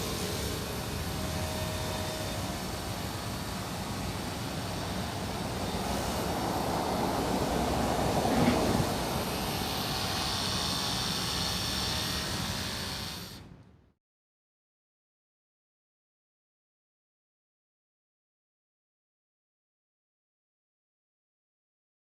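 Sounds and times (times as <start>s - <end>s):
pressure washer motor hum: 0.0s - 13.7s.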